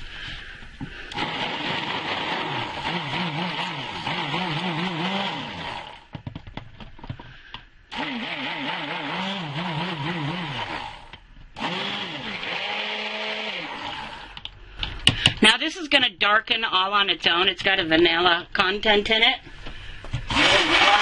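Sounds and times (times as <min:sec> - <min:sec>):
stick blender running: 0:00.9 - 0:06.2, 0:07.9 - 0:14.5, 0:20.2 - 0:21.0.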